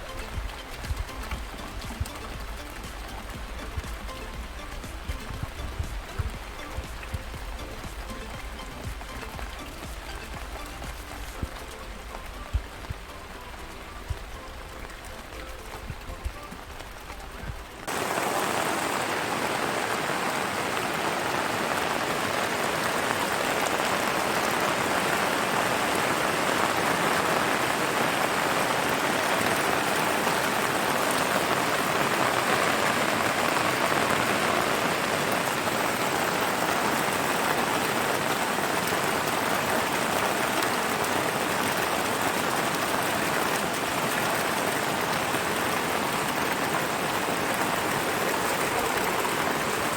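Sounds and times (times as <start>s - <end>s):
heavy rain hissing: 0.0s - 49.9s.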